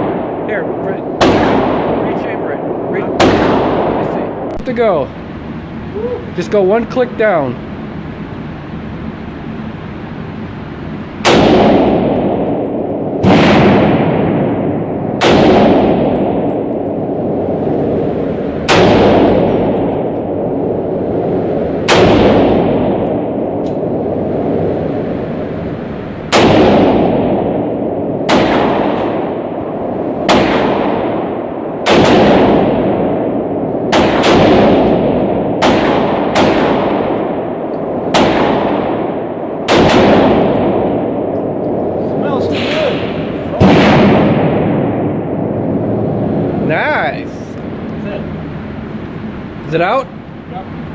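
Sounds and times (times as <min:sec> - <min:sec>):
rifle shots reverberating: 0:01.1 - 0:04.4, 0:11.2 - 0:17.5, 0:18.7 - 0:20.7, 0:21.9 - 0:24.2, 0:26.3 - 0:41.8, 0:42.5 - 0:45.7.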